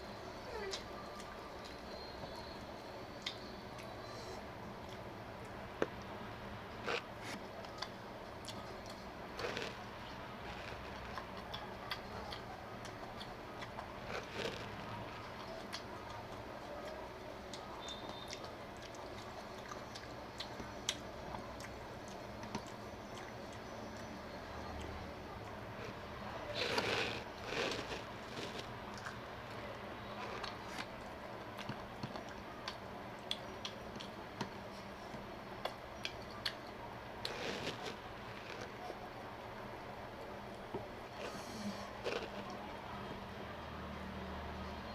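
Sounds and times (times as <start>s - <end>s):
person chewing: 6.8s - 24.1s, 26.6s - 29.2s, 35.6s - 38.8s, 41.1s - 42.5s
rustling: 25.8s - 28.7s.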